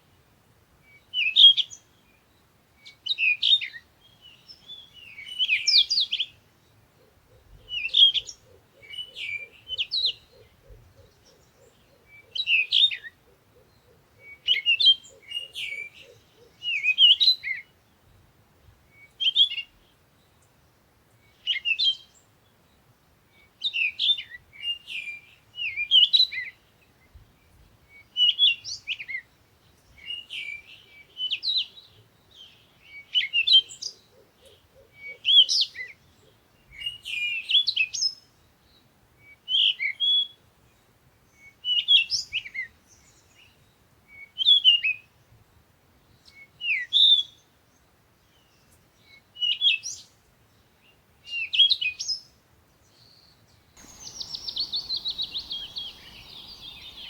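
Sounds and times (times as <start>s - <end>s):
birds chirping: 53.8s - 57.0s.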